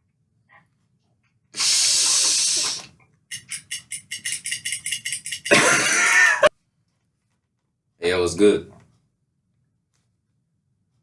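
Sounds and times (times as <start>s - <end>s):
person snorting: 1.6s - 2.9s
short sniffs: 1.6s - 3.0s.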